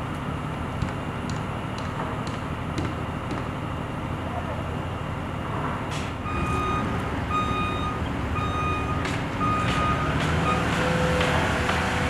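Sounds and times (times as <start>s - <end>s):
back-up alarm beeping: 6.2s - 10.8s.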